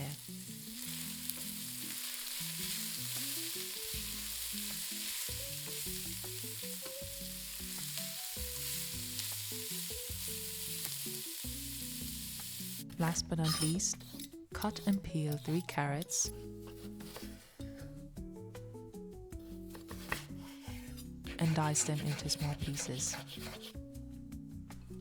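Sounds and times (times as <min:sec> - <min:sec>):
vegetables sizzling in a pot: 0:00.0 - 0:14.2
soft background music: 0:00.0 - 0:25.0.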